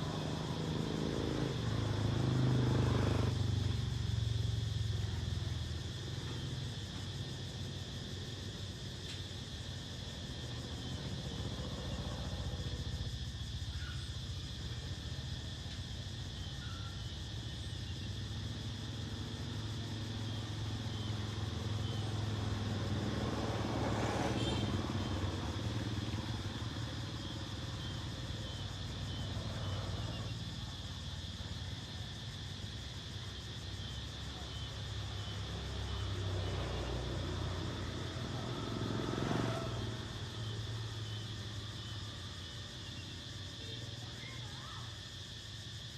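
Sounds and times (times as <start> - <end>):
vehicle passing close: 0.0 - 7.6, 18.0 - 30.6, 34.1 - 42.8
traffic engine rumble: 0.0 - 45.9.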